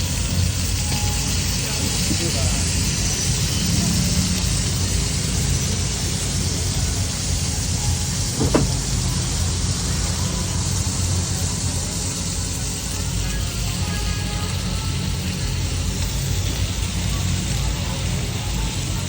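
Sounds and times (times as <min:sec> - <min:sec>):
passing traffic rumble: 0:00.0 - 0:19.0.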